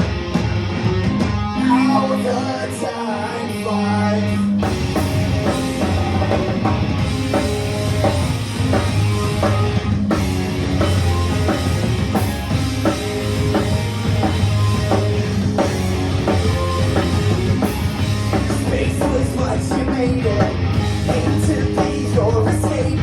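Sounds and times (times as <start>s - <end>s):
loud electric guitars: 0.0s - 23.0s
drum kit steady beat: 4.6s - 23.0s.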